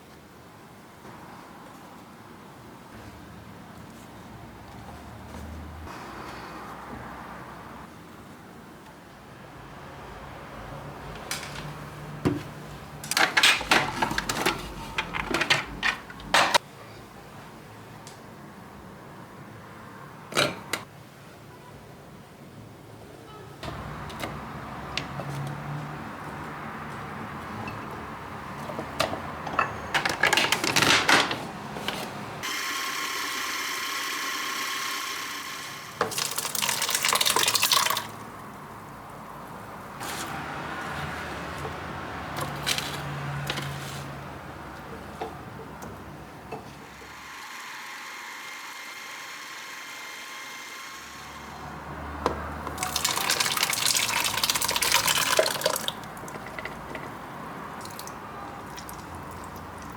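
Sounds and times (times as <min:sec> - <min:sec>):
water running and splashing: 0:52.7 - 0:56.6, 0:57.8 - 0:59.9.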